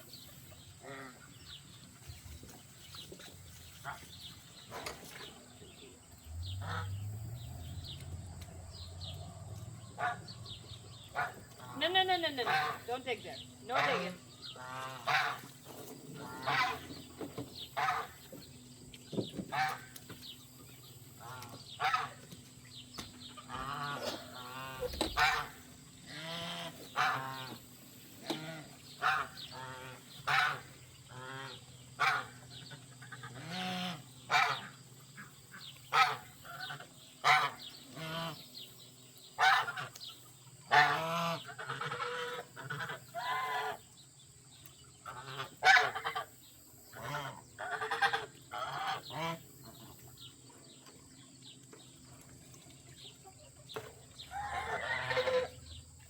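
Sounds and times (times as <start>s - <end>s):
geese honking: 6.6s - 8.1s, 9.9s - 17.0s, 17.7s - 18.4s, 21.2s - 22.2s, 23.3s - 38.4s, 39.4s - 43.8s, 45.0s - 49.8s, 54.3s - 55.7s.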